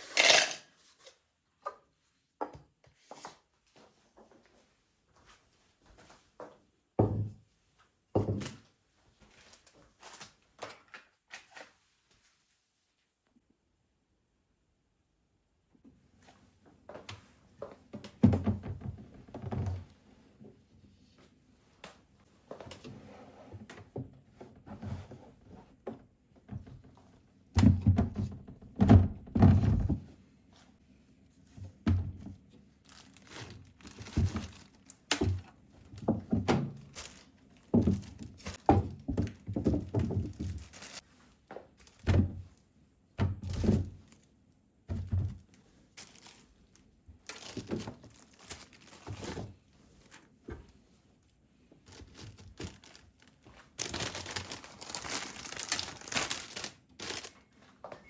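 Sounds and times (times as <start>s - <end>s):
objects thudding and knocking: 27.6s - 30.2s, 31.6s - 41.0s, 44.9s - 45.5s.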